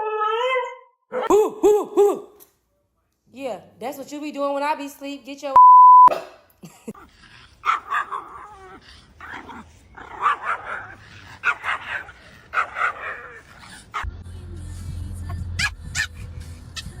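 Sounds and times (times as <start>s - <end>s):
dog barking and yipping: 7.6s - 8.6s, 10.0s - 14.1s, 15.6s - 17.0s.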